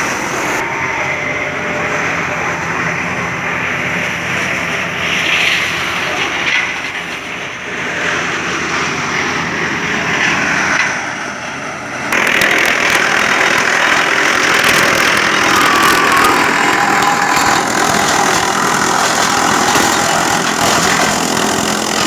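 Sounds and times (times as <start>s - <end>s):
wood chipper running: 0.0s - 22.0s
rapid crackling: 12.1s - 22.0s.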